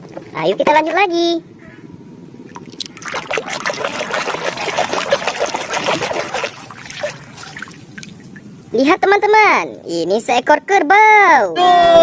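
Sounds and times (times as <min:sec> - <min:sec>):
water splashing and trickling: 0:02.5 - 0:08.8.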